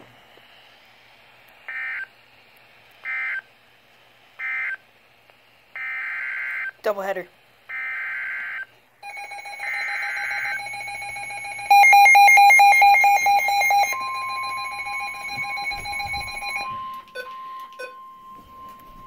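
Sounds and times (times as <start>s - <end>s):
rapid electronic alarm beeping: 7.7s - 19.0s
steady electronic alert tone: 9.0s - 18.8s.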